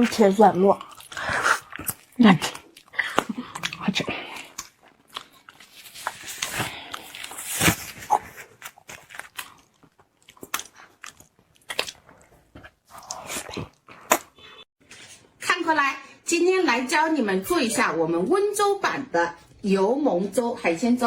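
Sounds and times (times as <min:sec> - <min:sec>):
chewing and lip-smacking: 0:00.6 - 0:06.3, 0:08.1 - 0:14.6.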